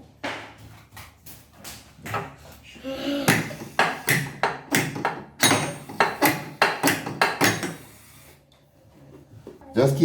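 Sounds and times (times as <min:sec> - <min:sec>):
hammer striking metal tap: 0:03.3 - 0:07.8.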